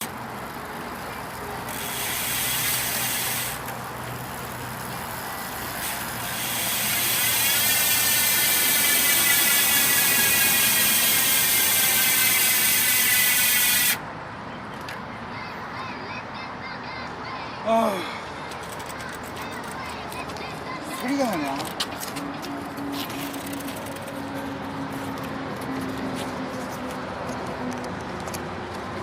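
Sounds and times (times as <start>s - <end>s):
bicycle freehub ratchet buzzing: 0.0s - 14.0s, 23.0s - 24.2s.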